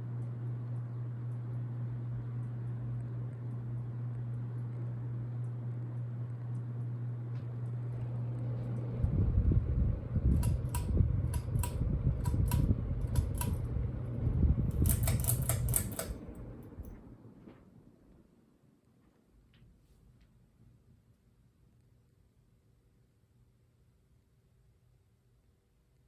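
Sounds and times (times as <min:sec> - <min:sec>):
ceiling fan motor humming: 0:00.0 - 0:18.7
rumble with sharp clicks: 0:07.4 - 0:17.1.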